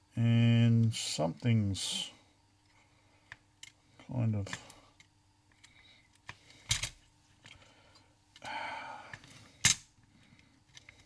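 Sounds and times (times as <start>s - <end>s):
plastic and metal parts clicking: 9.1s - 11.0s.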